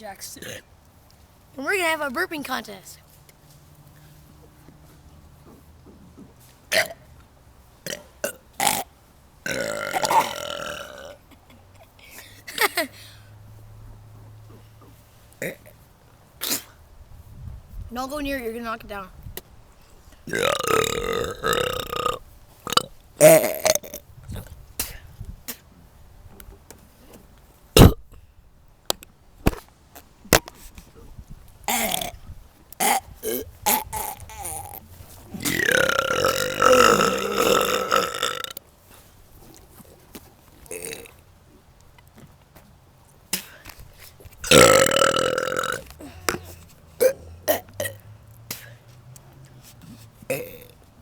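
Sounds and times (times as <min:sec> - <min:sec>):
person burping: 0:09.5 - 0:11.2, 0:20.3 - 0:24.4, 0:27.8 - 0:28.0, 0:31.7 - 0:32.2, 0:32.8 - 0:34.8, 0:35.4 - 0:38.6, 0:44.5 - 0:48.0, 0:50.3 - 0:50.8.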